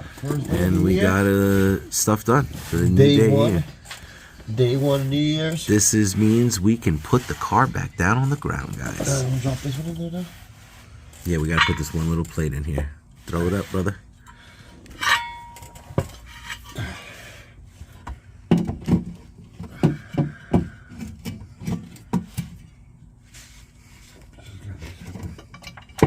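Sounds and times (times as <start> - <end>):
metal parts and tools clinking: 14.9 - 16.8.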